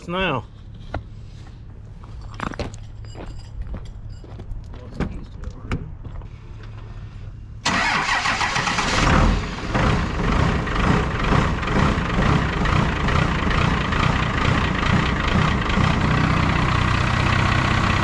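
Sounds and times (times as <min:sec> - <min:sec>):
diesel engine starting and idling: 0:06.8 - 0:18.0.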